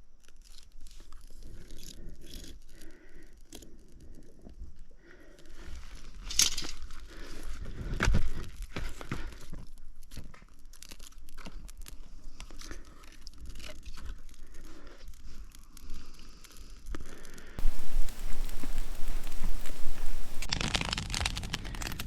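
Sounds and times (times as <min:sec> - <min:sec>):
rustling and crinkling: 0:17.6 - 0:22.0.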